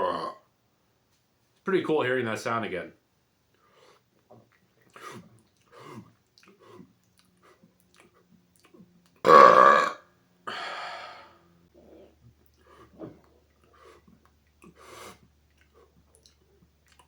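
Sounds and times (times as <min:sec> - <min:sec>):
man burping: 0:00.0 - 0:00.4, 0:09.2 - 0:10.7
breathy exhale: 0:10.5 - 0:12.1.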